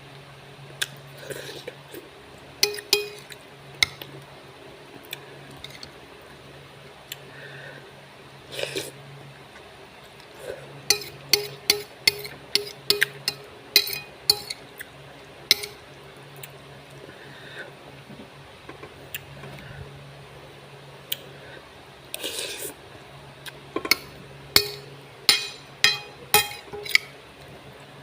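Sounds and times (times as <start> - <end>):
utensil clinking against bowl: 2.6 - 4.0, 10.9 - 14.6, 15.5 - 15.8, 23.8 - 27.2.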